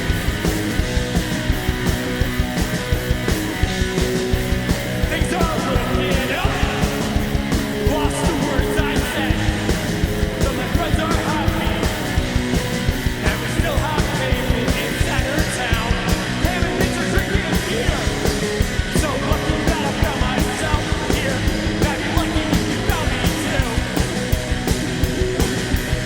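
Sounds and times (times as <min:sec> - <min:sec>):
drum beat: 0:00.0 - 0:26.0
live punk rock band: 0:00.0 - 0:26.0
person singing: 0:05.0 - 0:12.5, 0:13.2 - 0:24.1.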